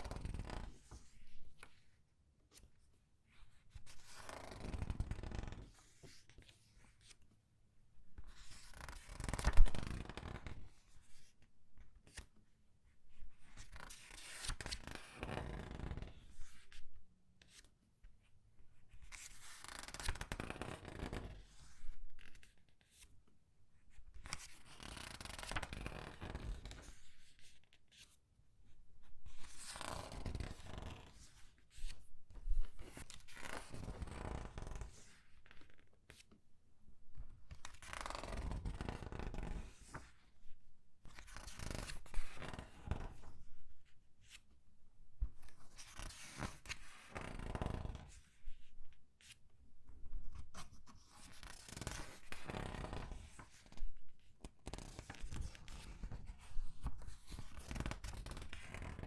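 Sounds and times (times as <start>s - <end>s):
paper pages turning and crinkling: 24.2s - 27.1s, 50.3s - 53.8s, 54.6s - 59.0s.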